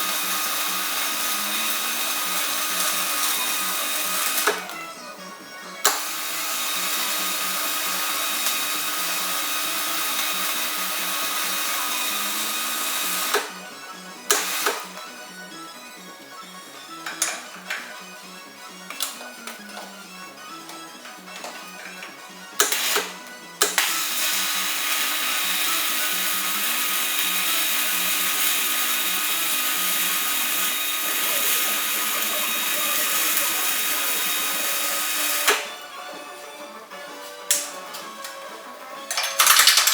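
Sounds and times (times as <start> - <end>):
arc welding crackling hiss: 0.0 - 4.7, 5.9 - 13.5, 22.6 - 23.1, 23.7 - 35.6.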